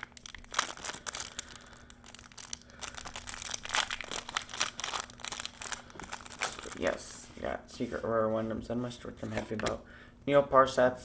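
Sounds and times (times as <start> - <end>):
foil wrapper crinkling: 0.0 - 7.1.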